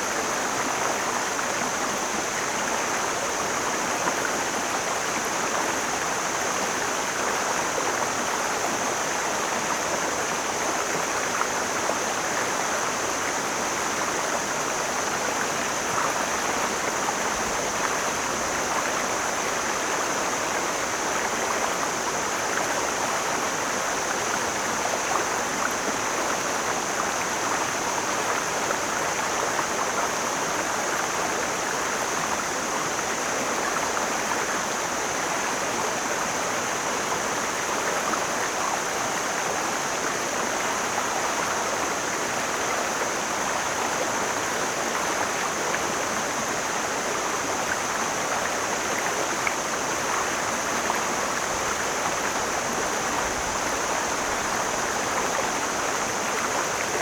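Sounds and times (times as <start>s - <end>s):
mountain stream flowing: 0.0s - 57.0s.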